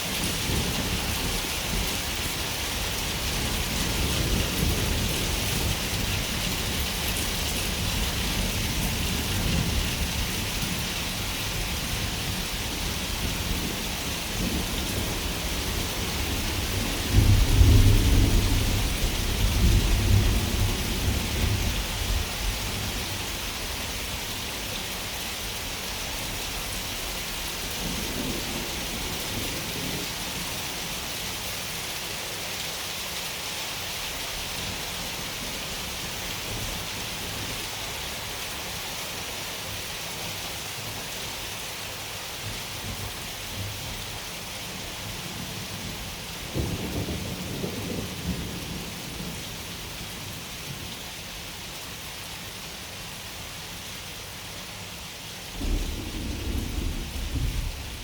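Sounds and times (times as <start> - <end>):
steady rain: 0.0 - 58.0
thunder rumbling: 11.1 - 24.2, 55.6 - 58.0.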